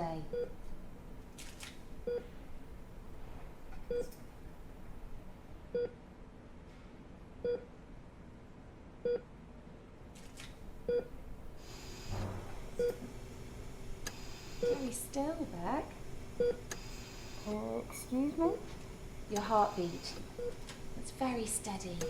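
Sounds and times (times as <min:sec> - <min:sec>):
heart-rate monitor beeping: 0:00.3 - 0:00.6, 0:02.0 - 0:02.3, 0:10.9 - 0:11.1, 0:12.8 - 0:13.1, 0:14.0 - 0:15.0, 0:16.4 - 0:17.5, 0:19.4 - 0:20.7.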